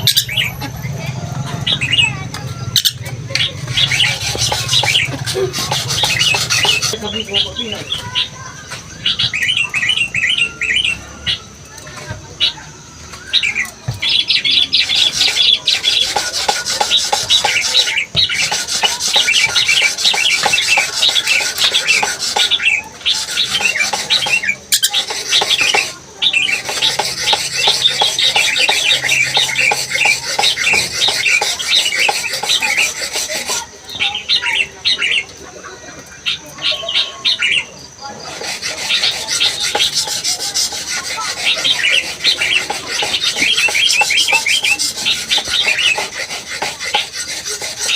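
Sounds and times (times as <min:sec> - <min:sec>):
parrot chattering: 0:02.8 - 0:08.2, 0:14.5 - 0:34.3, 0:38.3 - 0:47.9.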